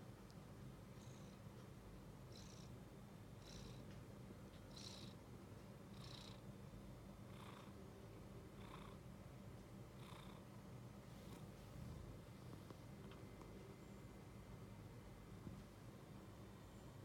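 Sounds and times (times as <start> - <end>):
cat purring: 2.3 - 2.8, 3.4 - 3.9, 4.6 - 5.2, 5.9 - 6.4, 7.3 - 7.8, 8.5 - 9.0, 10.0 - 10.5, 11.1 - 13.6.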